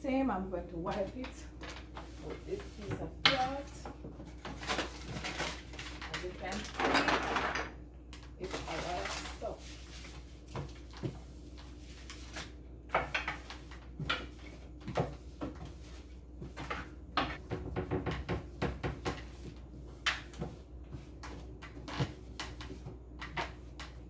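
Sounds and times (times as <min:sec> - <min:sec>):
containers clattering in cupboard: 0:00.9 - 0:07.8.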